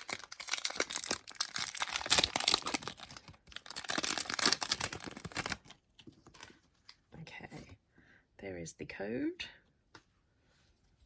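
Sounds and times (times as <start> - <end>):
foil wrapper tearing and crinkling: 0.0 - 5.7.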